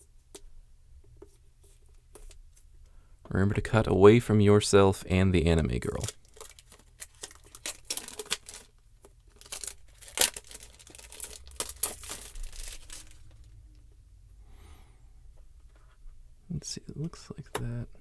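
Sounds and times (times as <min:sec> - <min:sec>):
packaging wrap crinkling and tearing: 0:05.8 - 0:13.6.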